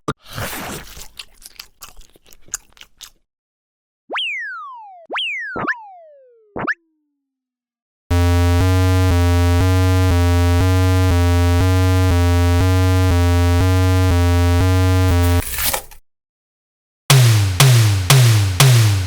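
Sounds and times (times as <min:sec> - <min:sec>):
buzzy pulsing synthesizer tone: 0:08.1 - 0:15.4, 0:17.1 - 0:19.0.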